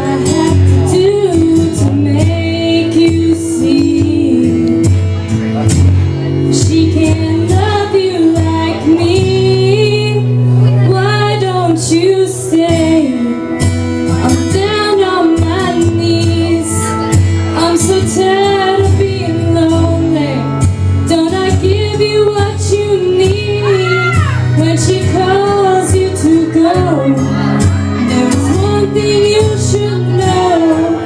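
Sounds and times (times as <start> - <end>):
woman singing country song: 0.0 - 5.2, 6.3 - 31.0
karaoke backing track: 0.0 - 31.0.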